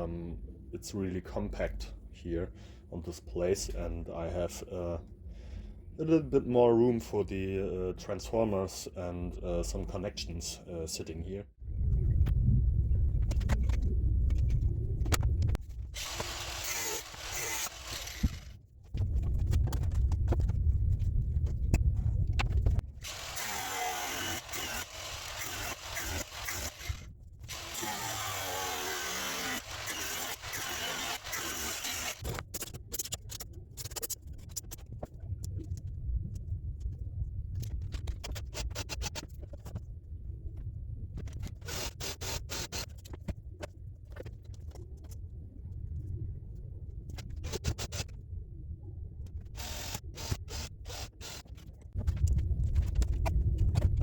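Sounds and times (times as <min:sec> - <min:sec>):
low rumble: 0:11.6 - 0:23.6, 0:52.0 - 0:54.0
power tool hissing on plastic: 0:16.0 - 0:18.5, 0:23.0 - 0:32.2
scraping rasp: 0:23.0 - 0:32.2.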